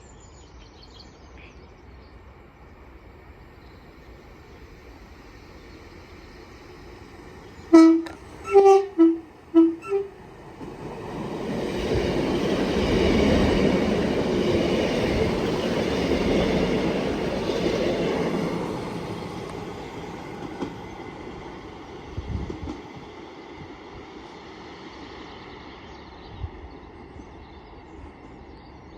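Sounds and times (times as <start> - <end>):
train passing at speed: 0.0 - 28.9
train two-tone horn toots: 7.7 - 10.2.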